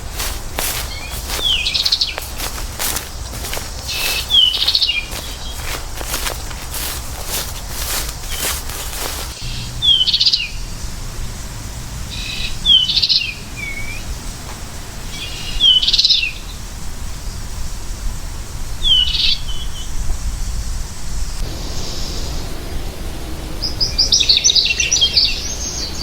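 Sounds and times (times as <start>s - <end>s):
finch calling: 0.0s - 6.2s, 7.3s - 20.1s, 21.2s - 26.0s
low background rumble: 4.9s - 26.0s.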